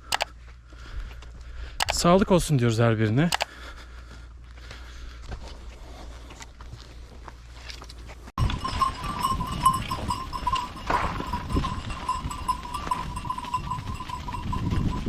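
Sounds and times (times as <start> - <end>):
sheep hooves knocking and shuffling: 6.7 - 15.0.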